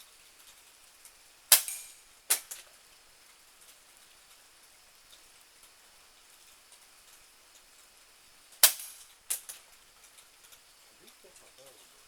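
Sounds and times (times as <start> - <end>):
faint rain patter: 0.0 - 12.0
air pistol shot crack: 1.5 - 2.6, 8.6 - 9.0.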